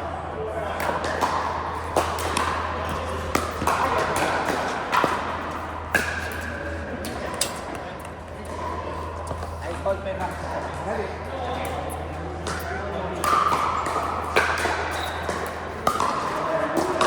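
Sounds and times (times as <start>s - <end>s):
background hubbub: 0.0s - 17.0s.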